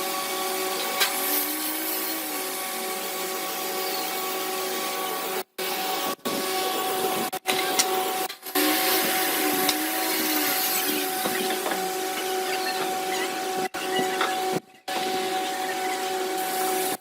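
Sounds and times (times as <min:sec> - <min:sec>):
woodworking power tool running: 0:00.0 - 0:17.0.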